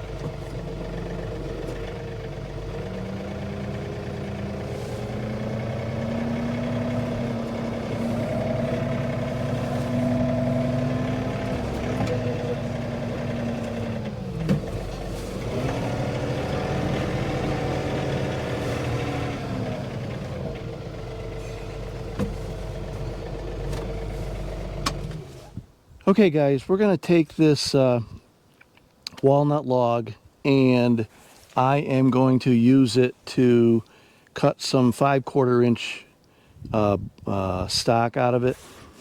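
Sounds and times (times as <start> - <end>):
engine running at high revs: 0.0 - 25.6.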